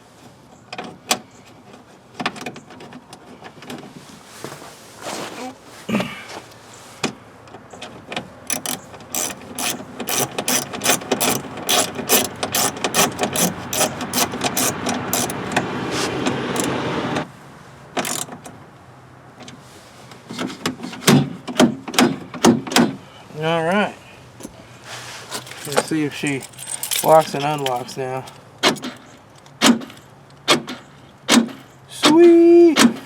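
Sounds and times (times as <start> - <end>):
ratchet wrench clicking: 8.5 - 15.4, 18.0 - 18.3.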